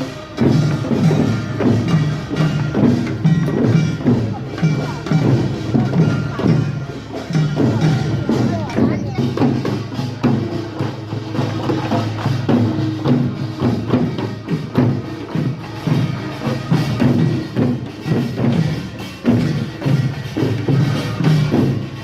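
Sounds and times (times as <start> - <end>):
repeated rhythmic knocks: 0.0 - 22.0.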